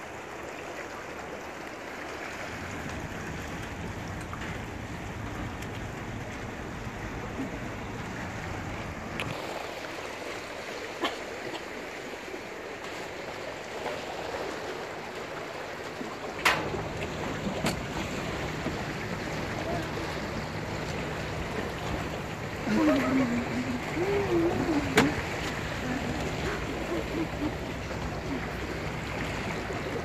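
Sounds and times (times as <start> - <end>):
water rushing around a speedboat: 0.0 - 30.0
sharp knocks or splashes: 16.2 - 19.8, 24.8 - 25.8.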